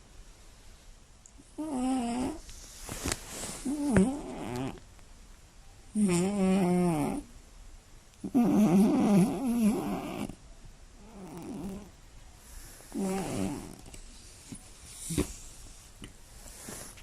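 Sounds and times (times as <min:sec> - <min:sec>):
cat snoring: 0:01.6 - 0:02.4, 0:03.6 - 0:04.8, 0:06.0 - 0:07.3, 0:08.2 - 0:10.4, 0:11.0 - 0:14.0.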